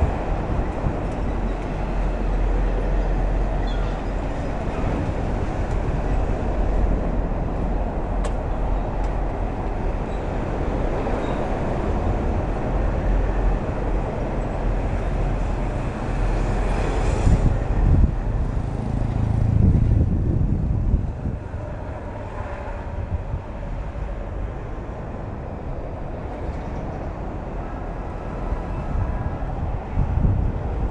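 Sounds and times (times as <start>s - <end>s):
traffic rumble: 0.0s - 30.9s
louder vehicle passing: 16.9s - 21.0s.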